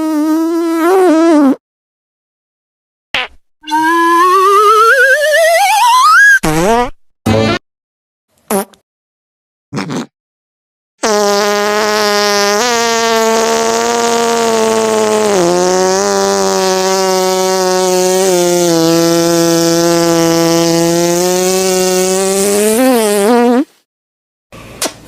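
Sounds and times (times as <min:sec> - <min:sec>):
fart sound effect: 0:00.0 - 0:01.6, 0:03.2 - 0:07.6, 0:08.5 - 0:08.8, 0:09.8 - 0:10.1, 0:11.0 - 0:23.7.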